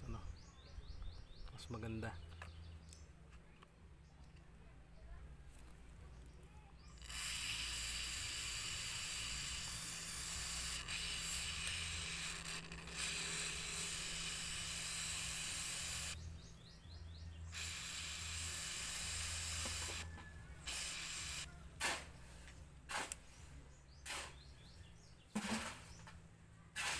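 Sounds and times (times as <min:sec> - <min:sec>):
aerosol can spraying: 0:07.0 - 0:16.2, 0:17.5 - 0:22.0.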